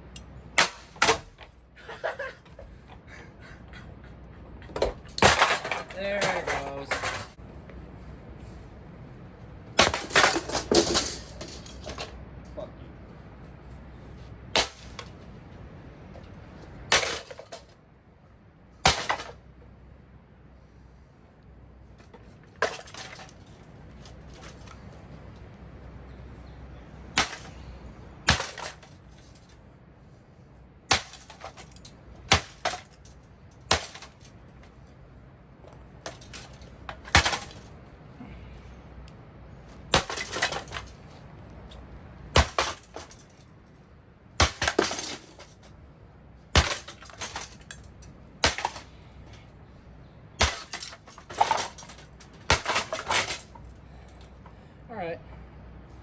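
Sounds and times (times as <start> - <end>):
broken pieces clattering: 4.8 - 7.4, 9.8 - 12.2, 16.9 - 17.7, 22.6 - 24.8, 30.9 - 34.4, 36.0 - 37.8, 39.9 - 41.2, 44.4 - 45.8, 46.6 - 49.0, 50.4 - 54.2.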